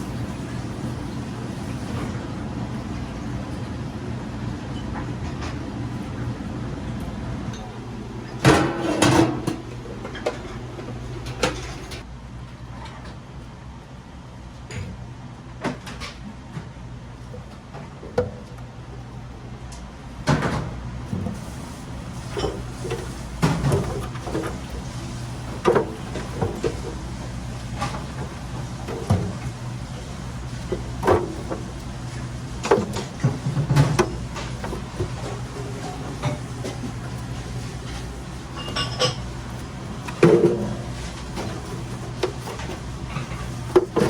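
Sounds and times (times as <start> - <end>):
food slicing machine humming: 0.0 - 12.0, 21.0 - 44.0.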